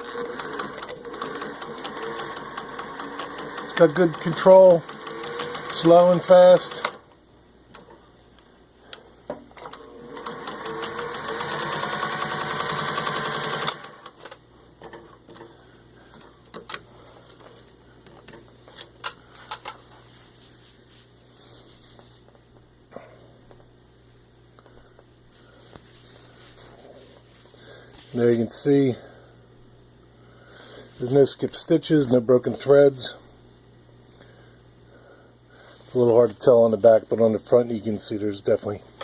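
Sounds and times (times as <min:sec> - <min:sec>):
sewing machine stitching: 0:00.0 - 0:07.0, 0:09.6 - 0:14.2.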